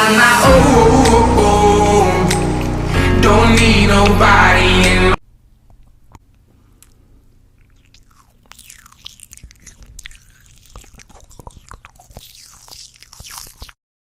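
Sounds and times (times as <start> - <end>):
low hum: 0.4 - 7.8
crunching and crackling: 5.6 - 13.8.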